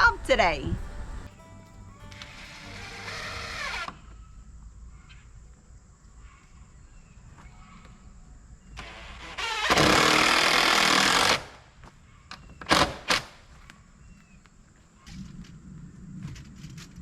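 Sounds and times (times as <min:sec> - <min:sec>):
power tool running: 0:00.8 - 0:03.9.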